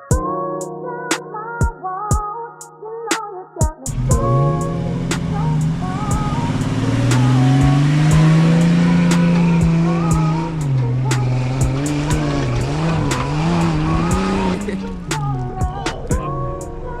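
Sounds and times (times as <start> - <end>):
truck engine revving: 3.9 - 16.1.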